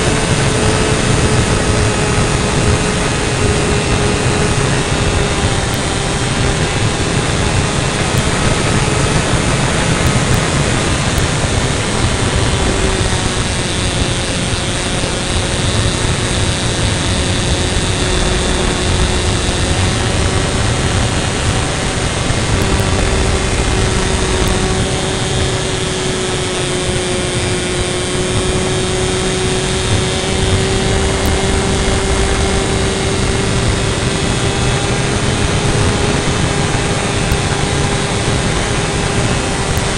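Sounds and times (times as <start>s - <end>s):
model airplane engine droning: 0.0s - 39.9s
wind rush on microphone: 0.0s - 39.9s.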